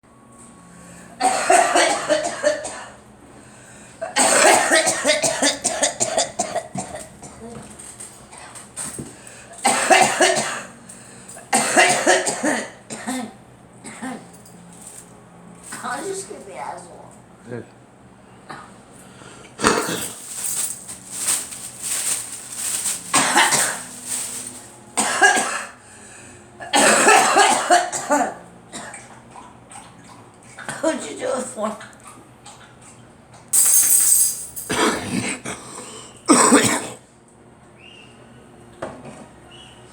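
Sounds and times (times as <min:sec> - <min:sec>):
girl coughing: 0:01.2 - 0:03.0, 0:04.0 - 0:07.6, 0:09.6 - 0:10.7, 0:11.5 - 0:14.3, 0:19.6 - 0:20.2, 0:23.2 - 0:23.8, 0:25.0 - 0:25.8, 0:26.7 - 0:29.0, 0:34.6 - 0:35.6, 0:36.3 - 0:37.0.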